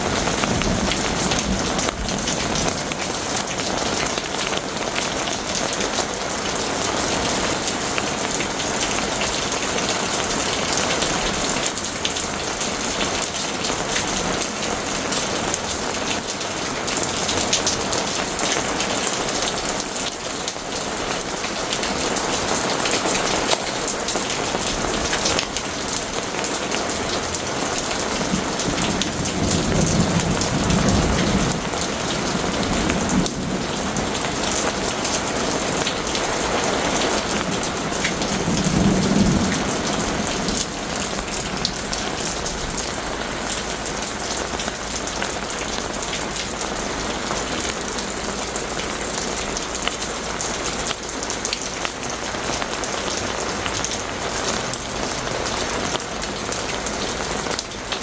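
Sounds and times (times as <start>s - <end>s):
thunder rumble: 0.0s - 3.7s, 28.0s - 43.6s
heavy rain: 0.0s - 58.0s.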